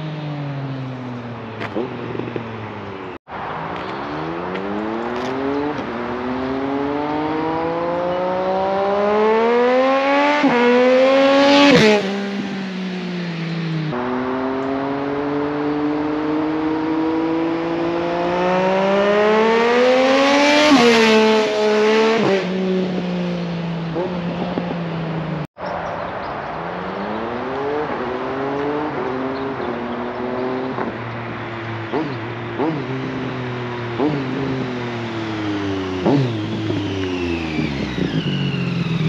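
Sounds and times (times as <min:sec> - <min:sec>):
motorcycle engine accelerating hard: 0:00.0 - 0:25.5, 0:26.7 - 0:39.0.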